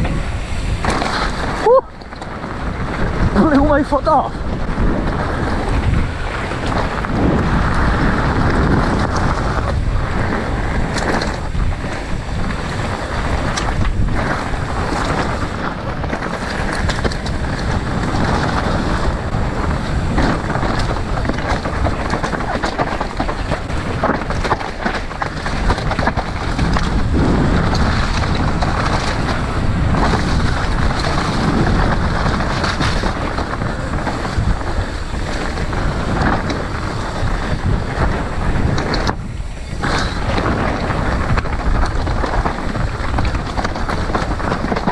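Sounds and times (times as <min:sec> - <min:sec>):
bike knocks and rattles: 0:00.0 - 0:44.9
wind buffeting microphone: 0:00.0 - 0:44.9.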